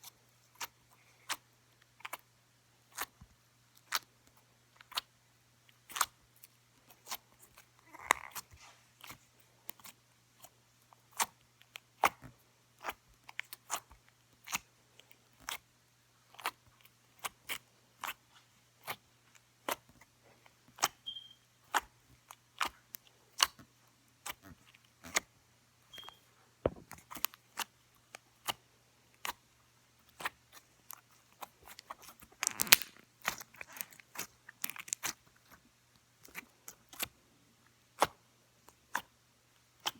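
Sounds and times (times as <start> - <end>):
fingers poking slime: 5.8 - 6.2, 20.7 - 25.3.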